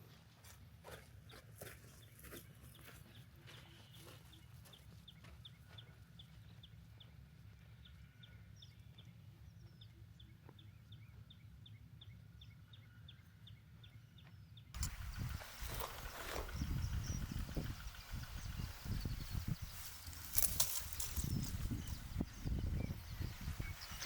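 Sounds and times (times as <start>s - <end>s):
low steady rumble: 14.8s - 23.8s
faint high bird chips: 14.8s - 24.0s.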